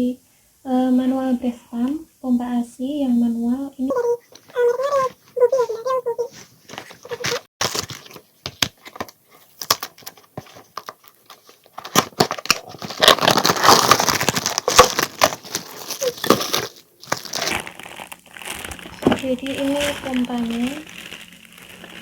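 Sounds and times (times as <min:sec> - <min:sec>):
packaging crinkling and rustling: 0:04.2 - 0:22.0
packaging clicks: 0:07.1 - 0:22.0.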